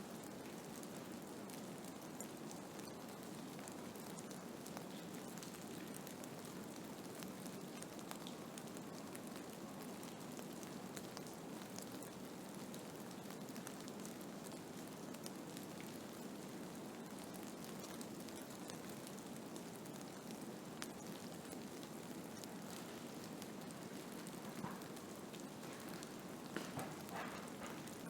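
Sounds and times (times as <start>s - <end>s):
snow ticking on a surface: 17.2s - 28.0s.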